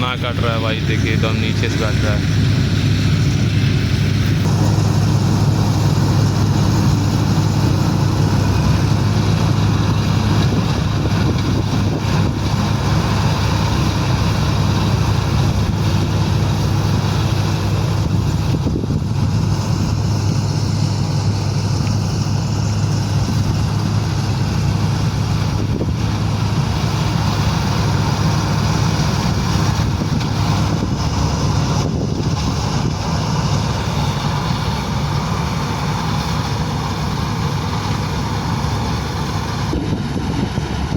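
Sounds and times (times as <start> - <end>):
machinery noise: 0.0 - 40.9
tractor diesel engine drone: 0.0 - 40.9.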